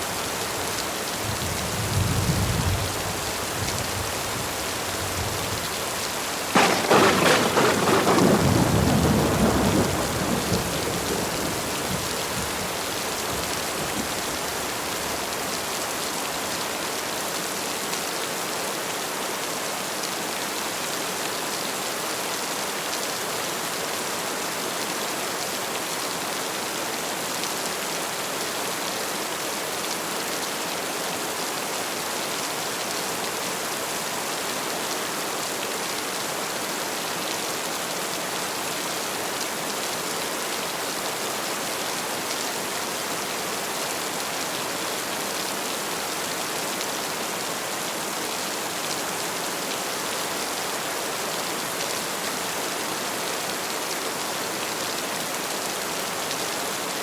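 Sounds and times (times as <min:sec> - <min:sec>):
heavy rain hissing: 0:00.0 - 0:16.0.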